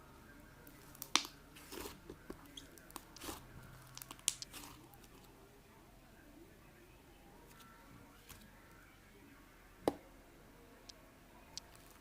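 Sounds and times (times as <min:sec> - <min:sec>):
slime popping and crackling: 0:00.8 - 0:05.2.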